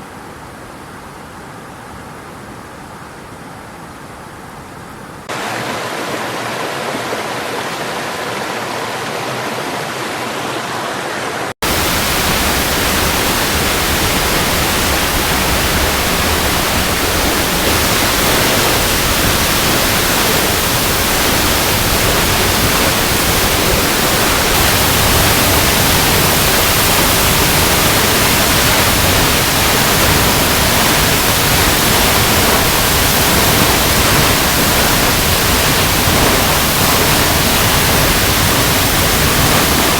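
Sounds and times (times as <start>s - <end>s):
running water rushing: 0.0s - 39.9s.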